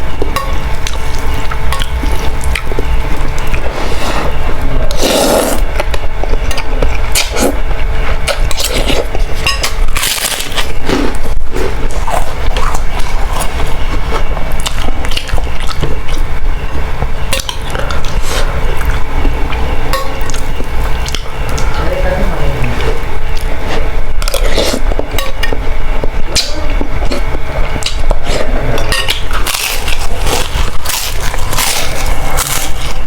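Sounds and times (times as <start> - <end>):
person chewing: 0.2 - 16.3, 23.3 - 25.6, 26.3 - 33.0
utensils clinking against bowl: 8.3 - 10.7, 27.9 - 32.7.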